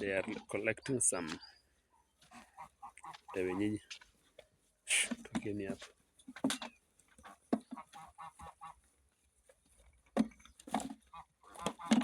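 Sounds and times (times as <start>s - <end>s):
geese honking: 2.3s - 3.8s, 7.2s - 8.8s, 11.1s - 12.0s.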